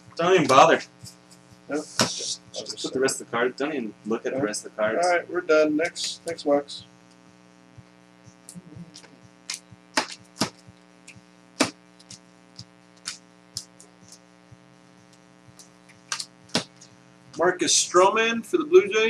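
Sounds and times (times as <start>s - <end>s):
steady electrical hum: 0.0s - 19.0s
cards clicking: 15.5s - 16.9s.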